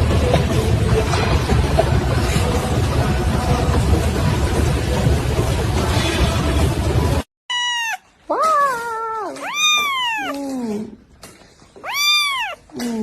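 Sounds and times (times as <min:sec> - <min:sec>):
kitten meowing: 0:07.5 - 0:10.6, 0:11.8 - 0:12.6.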